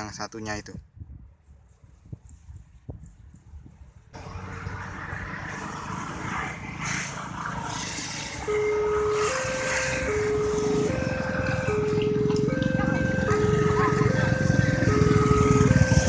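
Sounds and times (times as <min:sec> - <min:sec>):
passing road traffic: 0:01.5 - 0:16.0
two-tone level crossing siren: 0:08.4 - 0:16.0.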